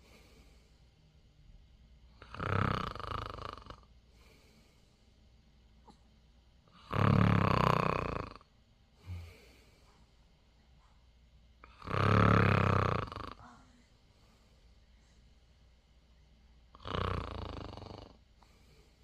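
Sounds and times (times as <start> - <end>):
quiet breathing: 0.0 - 1.5, 2.1 - 6.9, 7.7 - 19.0
baby snoring: 2.2 - 3.9, 6.7 - 9.2, 11.6 - 13.5, 16.8 - 18.2.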